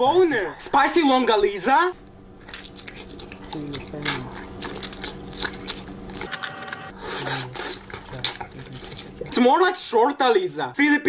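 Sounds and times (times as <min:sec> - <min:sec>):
chewing and wet mouth clicks: 0:02.4 - 0:06.3, 0:07.6 - 0:09.3.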